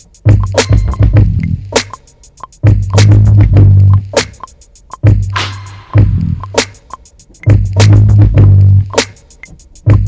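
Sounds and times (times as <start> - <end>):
hi-hat ticks: 0.0 - 10.0
drum hits: 0.2 - 2.0, 5.0 - 9.1
deep bass note: 5.4 - 6.5.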